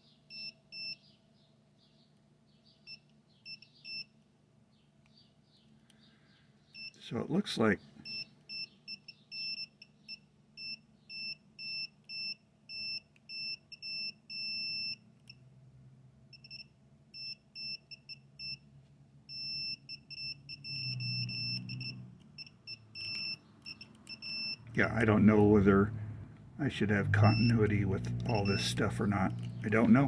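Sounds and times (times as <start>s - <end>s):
continuity tester beeping: 8.0s - 15.3s, 16.3s - 18.6s, 19.3s - 25.8s, 26.6s - 30.0s.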